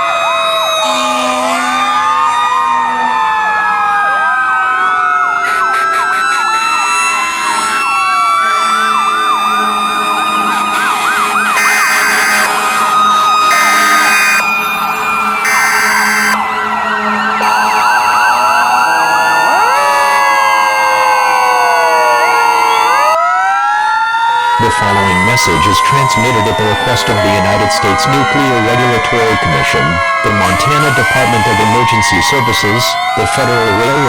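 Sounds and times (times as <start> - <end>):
emergency sirens wailing: 0.0 - 34.0
siren yelp warbling: 0.0 - 34.0
horn blasts: 0.8 - 1.9, 10.8 - 18.1.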